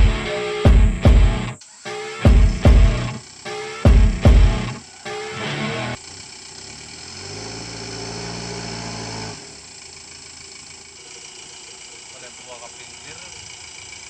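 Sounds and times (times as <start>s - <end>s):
vehicle engine running: 0.0s - 1.6s, 2.2s - 14.0s.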